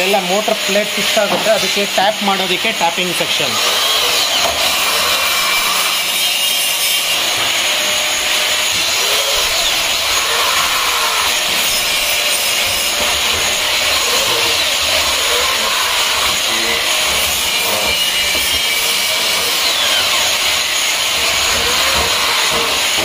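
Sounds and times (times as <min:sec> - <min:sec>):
high-pitched power tools machining: 0:00.0 - 0:23.0.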